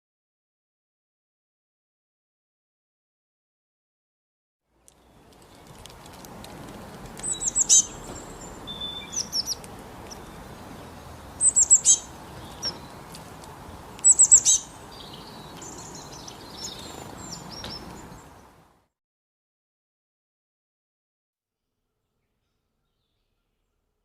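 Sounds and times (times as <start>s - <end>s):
steady outdoor hiss: 4.7s - 18.9s
songbird calls: 7.2s - 13.2s, 14.0s - 18.6s.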